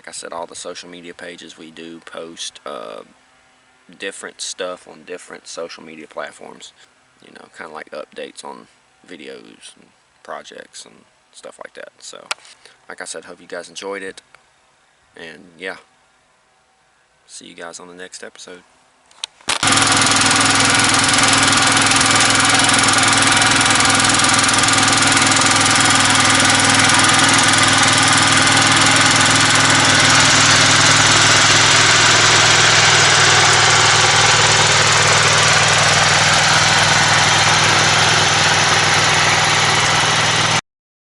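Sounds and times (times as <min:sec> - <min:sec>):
small gasoline engine running: 0:19.5 - 0:40.6.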